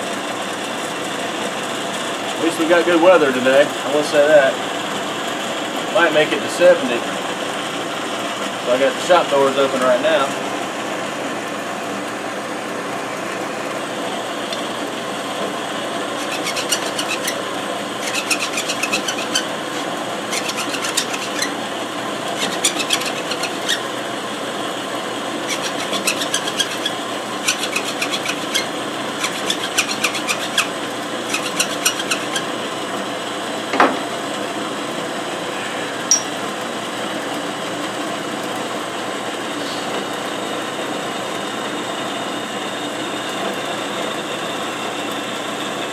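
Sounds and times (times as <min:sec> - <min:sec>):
steady machine hum: 0:00.0 - 0:45.9
hand file rasping on metal: 0:15.9 - 0:24.1, 0:25.2 - 0:32.6.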